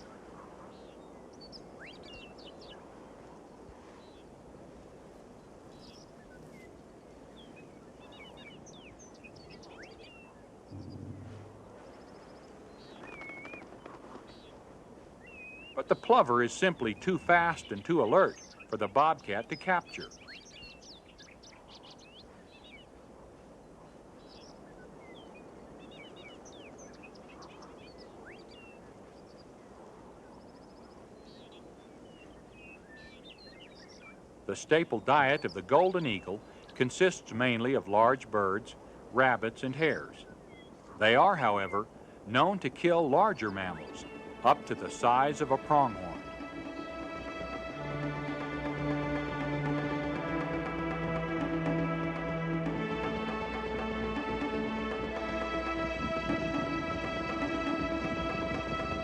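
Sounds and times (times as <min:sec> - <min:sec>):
small birds chirping: 0:00.0 - 0:04.4, 0:05.3 - 0:23.0, 0:23.6 - 0:55.9
steady low hiss: 0:00.0 - 0:59.0
low rumble: 0:10.7 - 0:12.0.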